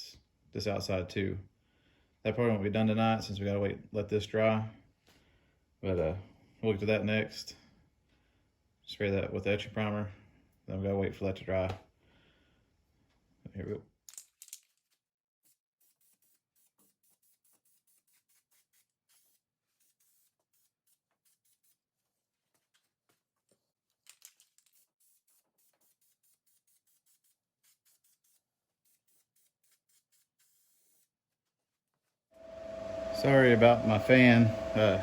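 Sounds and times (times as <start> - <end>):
aerosol can spraying: 15.8 - 21.8, 24.6 - 31.1.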